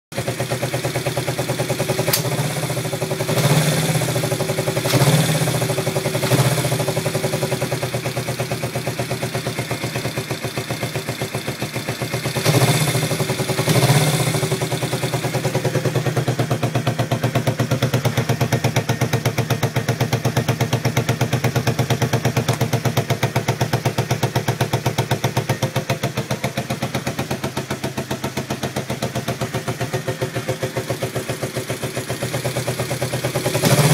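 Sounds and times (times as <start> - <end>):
motorcycle engine idling roughly: 0.1 - 33.9.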